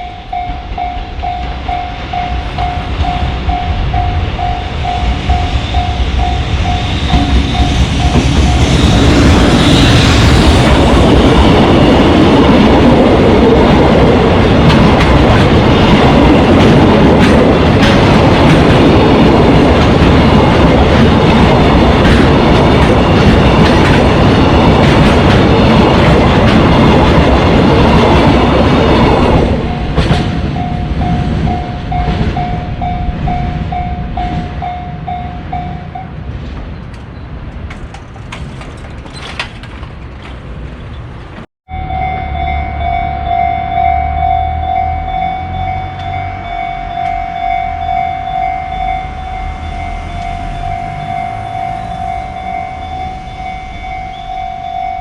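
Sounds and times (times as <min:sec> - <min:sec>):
freight wagons clattering over rail joints: 0:00.0 - 0:42.0
level crossing alarm pulsed tone: 0:41.7 - 0:55.0.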